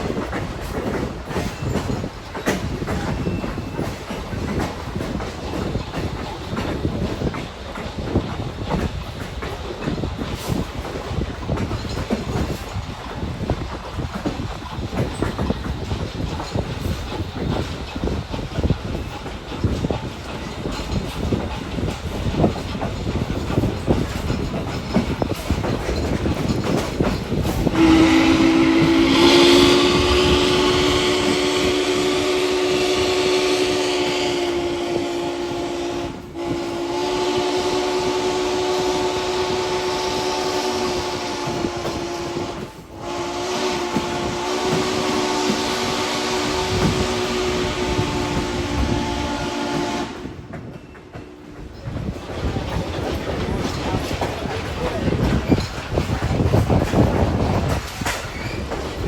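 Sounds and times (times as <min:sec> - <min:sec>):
train rumbling over rails: 0:00.0 - 0:59.0
steam locomotive whistle: 0:27.6 - 0:50.5.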